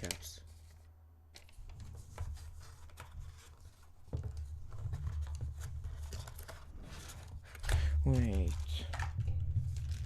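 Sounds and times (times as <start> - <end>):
cardboard packaging rustling: 2.0 - 10.0
small taps and knocks: 4.0 - 6.4.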